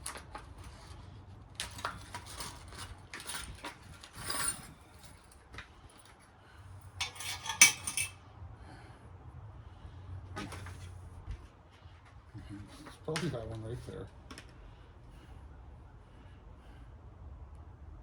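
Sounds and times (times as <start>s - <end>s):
metal parts clinking and rattling: 1.6s - 5.4s, 7.0s - 8.2s.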